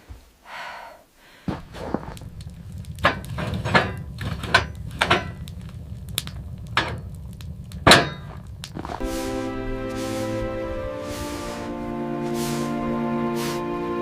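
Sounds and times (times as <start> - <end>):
low steady rumble: 1.5 - 14.0
music: 9.0 - 14.0.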